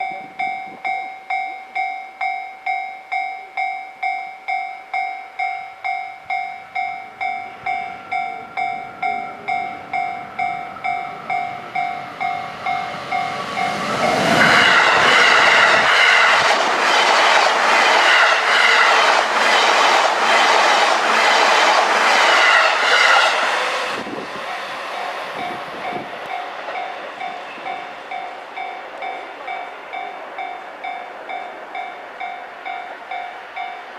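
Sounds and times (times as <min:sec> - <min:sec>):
level-crossing warning bell ringing: 0:00.0 - 0:16.4, 0:24.0 - 0:33.9.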